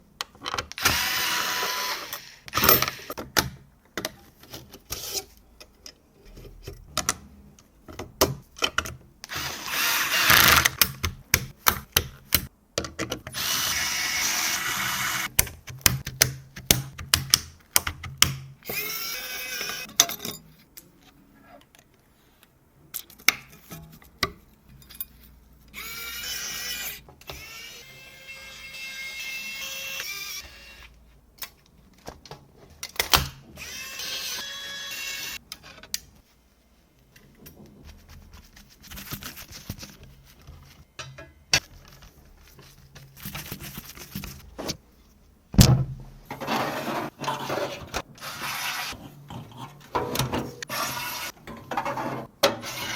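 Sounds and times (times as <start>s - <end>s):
power screwdriver whirring: 0.8s - 3.1s, 9.3s - 10.7s, 13.3s - 15.3s.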